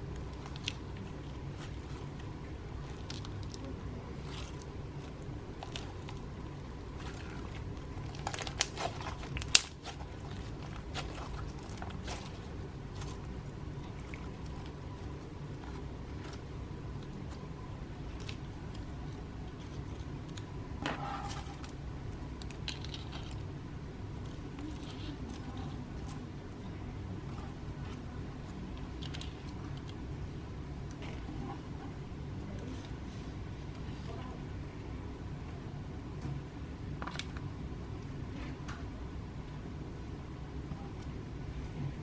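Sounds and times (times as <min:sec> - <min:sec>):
slime being squished by hand: 0:00.0 - 0:20.6
steady low hum: 0:00.0 - 0:42.0.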